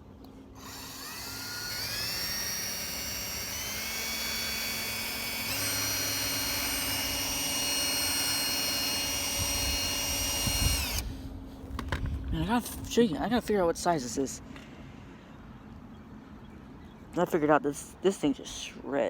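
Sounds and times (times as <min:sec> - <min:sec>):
small power drill whining: 0:00.5 - 0:11.9.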